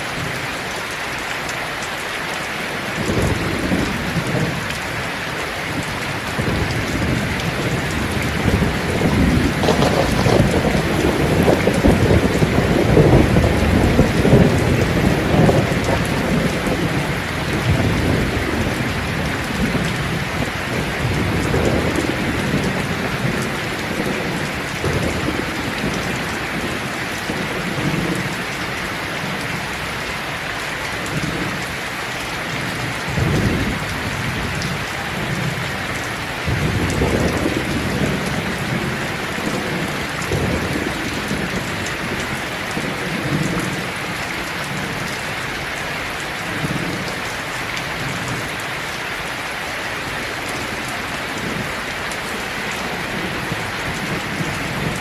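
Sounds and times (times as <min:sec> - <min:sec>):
heavy rain on leaves: 0:00.0 - 0:55.0
low thunder rumbles: 0:05.7 - 0:28.6, 0:32.5 - 0:45.2.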